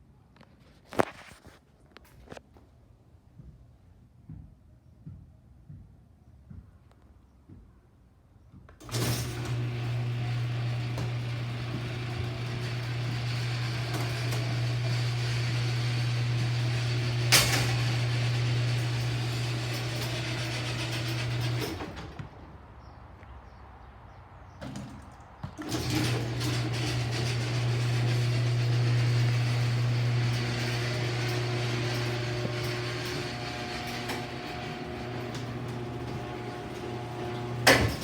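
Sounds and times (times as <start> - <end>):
garage door opener motor humming: 8.8 - 22.2, 25.6 - 38.0.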